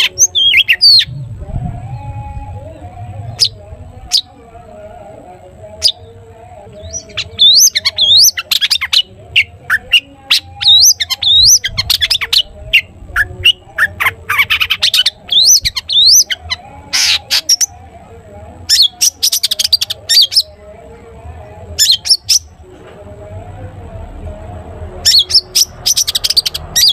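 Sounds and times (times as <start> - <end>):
bird singing chirps and whistles: 0.0 - 1.3, 6.8 - 17.7, 21.8 - 22.5, 25.1 - 26.9.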